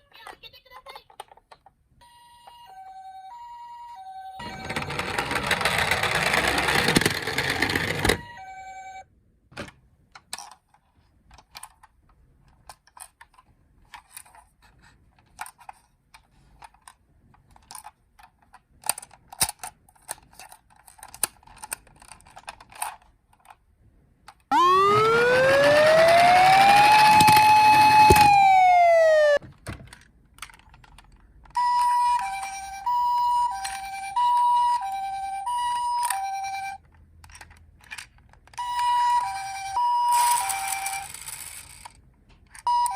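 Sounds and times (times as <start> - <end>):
two-tone ambulance siren: 2.0 - 5.0, 8.2 - 9.0, 24.5 - 29.4, 31.6 - 36.8, 38.6 - 41.1
wailing siren: 24.5 - 29.4.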